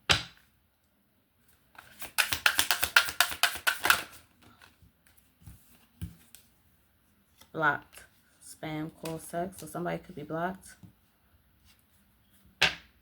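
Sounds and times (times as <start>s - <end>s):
cards being shuffled: 1.8s - 6.4s.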